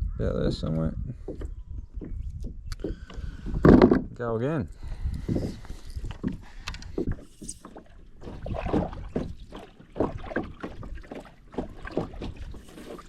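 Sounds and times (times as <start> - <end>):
water splashing against a kayak: 5.2 - 13.0.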